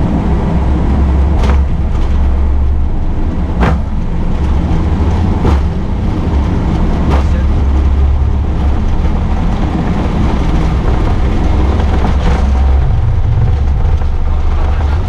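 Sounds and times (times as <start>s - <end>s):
jet engines and wheels rumbling: 0.0s - 15.0s
landing gear thumps: 1.3s - 2.6s, 3.4s - 8.2s.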